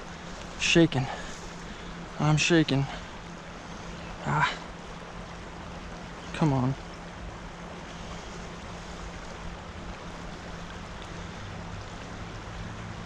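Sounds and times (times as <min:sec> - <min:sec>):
flowing creek: 0:00.0 - 0:13.0
low steady hum: 0:00.0 - 0:13.0.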